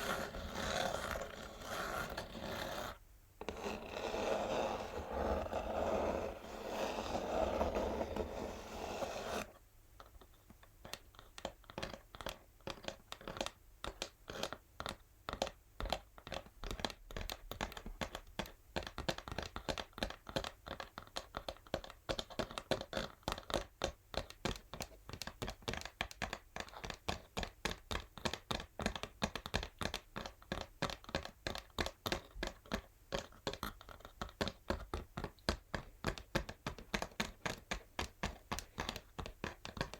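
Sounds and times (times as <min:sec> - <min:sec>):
fingernails scratching cardboard box: 0:00.0 - 0:09.5.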